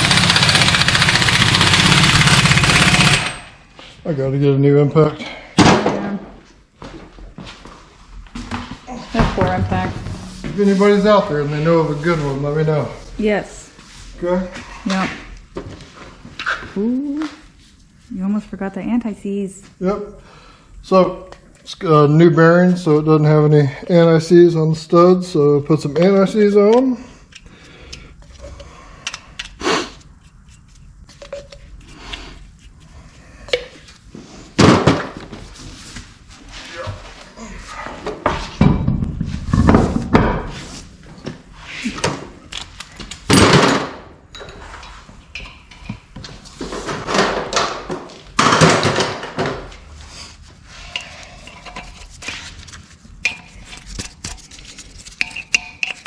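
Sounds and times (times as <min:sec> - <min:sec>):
metal tools clinking: 0:55.2 - 0:56.0.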